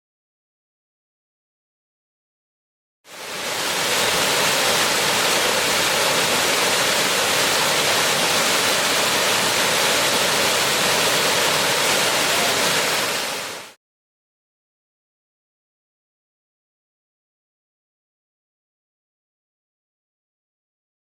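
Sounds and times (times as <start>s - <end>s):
waterfall rushing: 3.1s - 13.8s.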